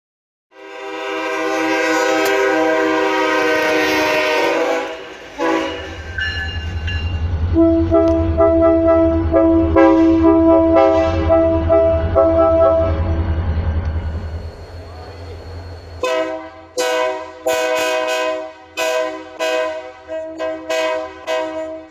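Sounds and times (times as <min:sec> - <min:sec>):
train air horn blasts: 0:00.5 - 0:06.4, 0:07.6 - 0:12.9, 0:16.0 - 0:21.9
locomotive rumble: 0:00.6 - 0:21.9.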